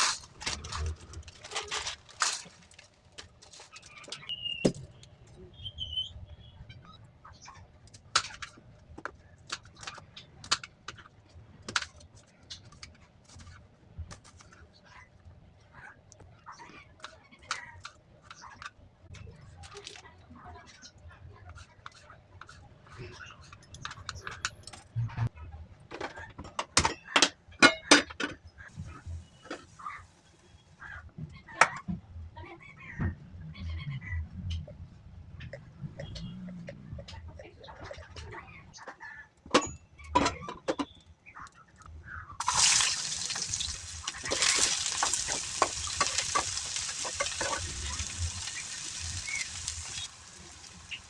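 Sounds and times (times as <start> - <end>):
cooking pan crackling hiss: 42.4 - 51.0
utensils clicking and knocking: 42.4 - 51.0.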